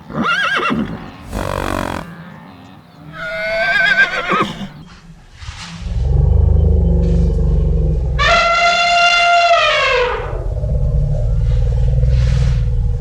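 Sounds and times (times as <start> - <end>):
horse whinnying: 0.1 - 2.2, 3.2 - 4.8
horse blowing: 1.2 - 2.2, 3.1 - 4.8.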